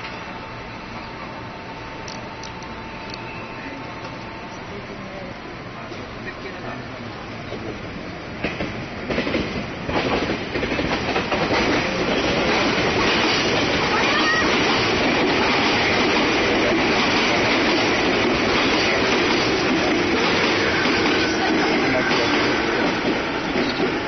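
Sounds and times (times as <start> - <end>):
train rumbling past: 0.0 - 24.0
train wheels clicking over rail joints: 7.5 - 24.0.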